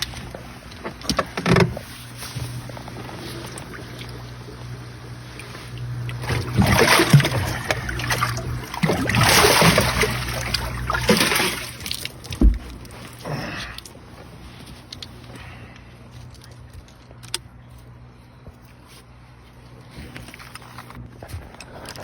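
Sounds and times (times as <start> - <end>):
steady low hum: 0.0 - 22.0
water splashing: 1.0 - 13.3
low thump: 12.4 - 12.8.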